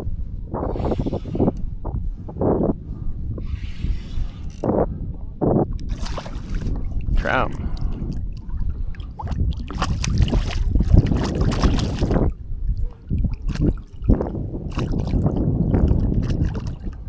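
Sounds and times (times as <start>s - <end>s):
wind buffeting microphone: 0.0s - 17.0s
water splashing and sloshing: 5.7s - 17.0s.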